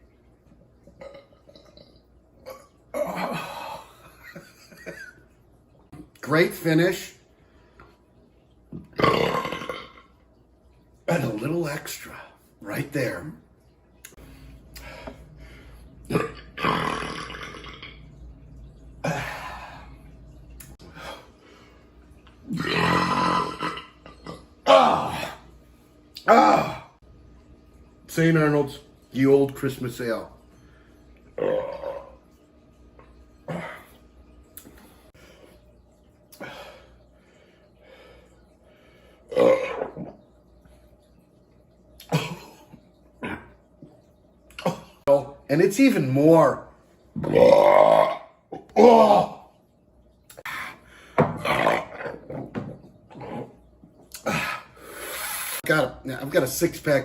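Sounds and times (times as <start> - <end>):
loud belches: 1.0 - 3.6, 8.9 - 10.1, 16.0 - 18.1, 22.5 - 25.4, 31.4 - 32.2, 39.3 - 40.2, 43.2 - 43.6, 47.2 - 49.4, 51.4 - 54.7.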